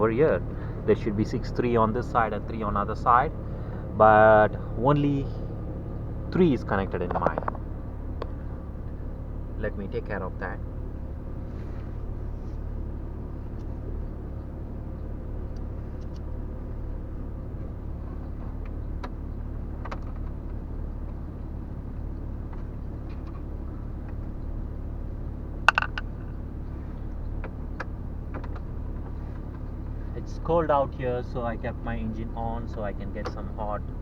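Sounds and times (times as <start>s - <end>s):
car engine idling: 0.0s - 34.0s
sharp clack: 25.7s - 26.4s.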